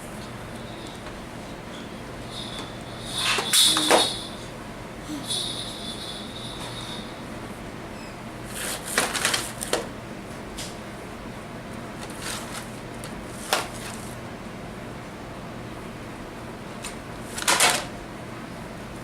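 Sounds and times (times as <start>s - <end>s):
steady low hum: 0.0s - 8.6s.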